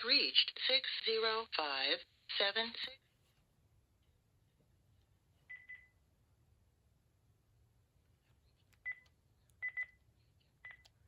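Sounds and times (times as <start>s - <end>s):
phone keypad beeps: 9.6s - 10.0s.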